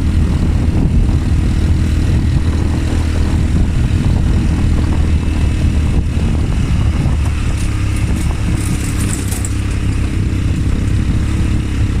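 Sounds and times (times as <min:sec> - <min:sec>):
atv engine rumbling: 0:00.0 - 0:12.0
light rattling clicks: 0:07.3 - 0:10.2.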